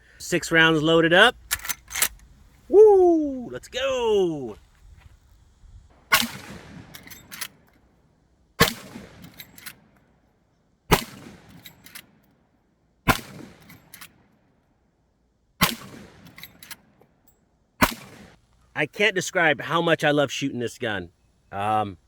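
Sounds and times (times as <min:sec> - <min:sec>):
rifle lever clicks: 0:01.4 - 0:02.3
rifle shots: 0:06.0 - 0:07.6, 0:08.6 - 0:09.8, 0:10.9 - 0:11.6, 0:13.1 - 0:14.0, 0:15.6 - 0:16.3, 0:17.8 - 0:18.4.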